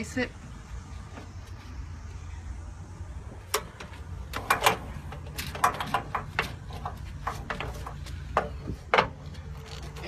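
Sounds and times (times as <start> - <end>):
air-brake coupling clicks and knocks: 3.5 - 9.9.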